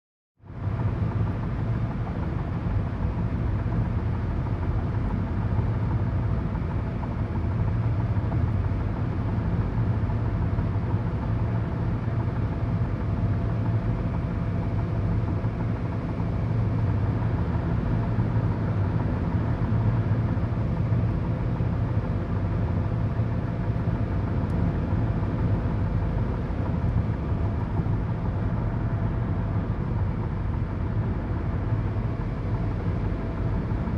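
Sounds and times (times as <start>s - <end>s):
car road and engine rumble: 0.4s - 33.9s.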